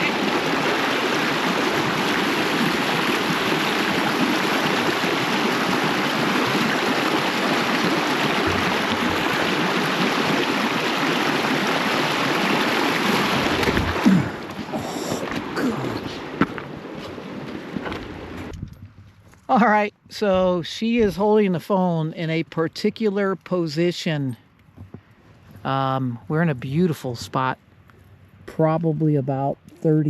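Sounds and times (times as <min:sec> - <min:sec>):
stream water rushing: 0:00.0 - 0:18.5.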